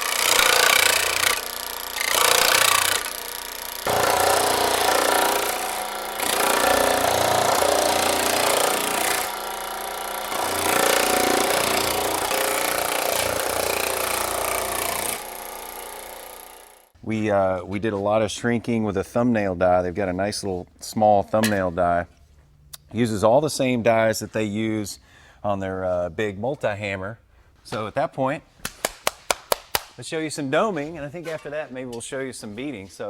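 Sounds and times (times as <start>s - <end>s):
power hammer pounding sheet metal: 0.0s - 16.8s.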